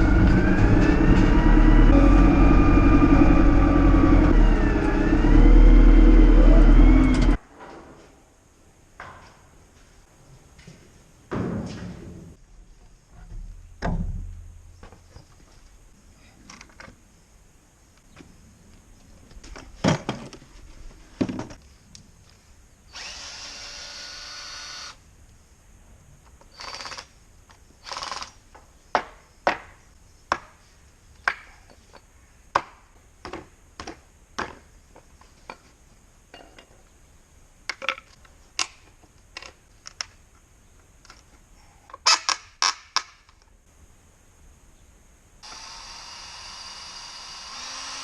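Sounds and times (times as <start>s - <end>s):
small motor whirring: 22.9s - 25.0s, 45.4s - 48.0s.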